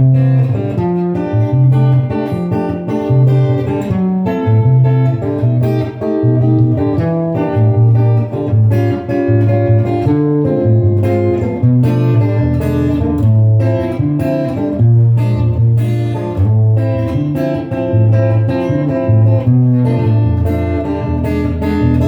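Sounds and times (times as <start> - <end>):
bass line: 0.0 - 22.0
guitar plucked and strummed: 0.0 - 22.0.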